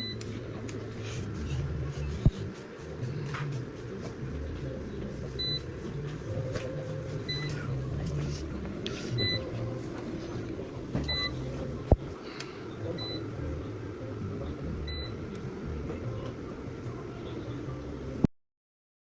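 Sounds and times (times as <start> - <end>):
steady low hum: 0.0 - 18.3.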